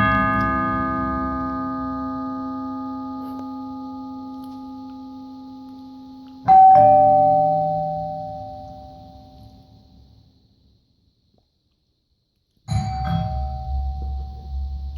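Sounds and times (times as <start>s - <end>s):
ding-dong doorbell chime: 0.0s - 4.9s, 6.5s - 9.7s, 12.7s - 14.9s.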